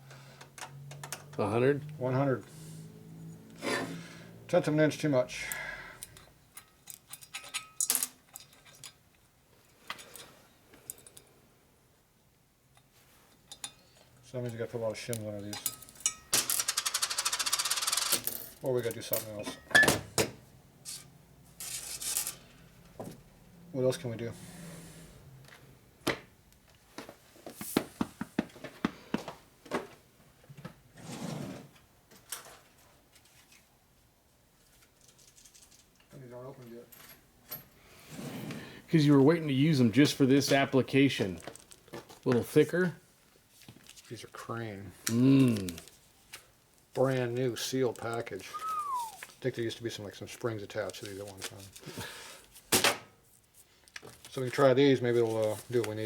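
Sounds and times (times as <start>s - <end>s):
small metal parts clinking: 6.0s - 9.1s, 15.1s - 19.6s, 20.9s - 22.6s.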